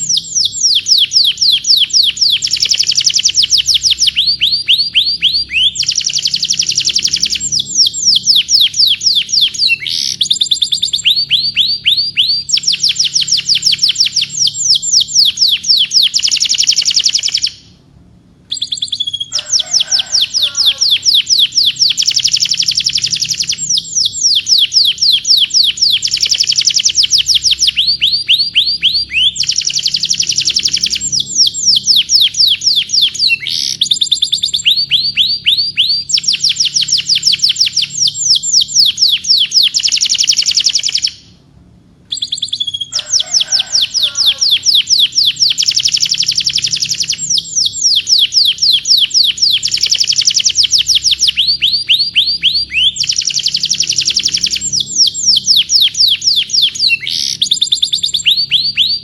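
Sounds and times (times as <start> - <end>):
canary singing trills: 0.0 - 41.4, 42.1 - 59.0
lower bird warble: 18.5 - 34.5, 42.1 - 58.1.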